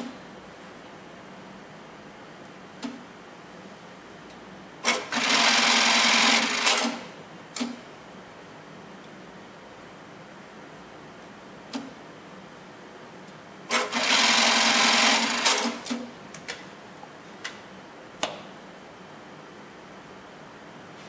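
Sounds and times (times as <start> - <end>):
sewing machine clicks: 4.9 - 7.0, 13.7 - 16.0
sewing machine running: 4.9 - 7.0, 13.7 - 15.9.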